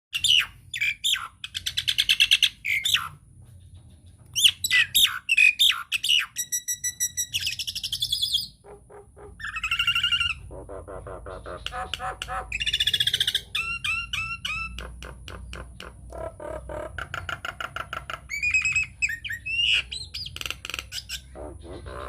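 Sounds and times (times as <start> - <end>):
myna calling: 21.0 - 22.0.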